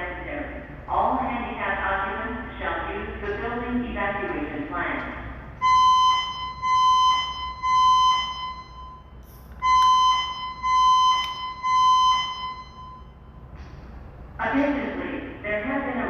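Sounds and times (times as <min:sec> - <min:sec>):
evacuation alarm beeping: 0:05.6 - 0:13.6.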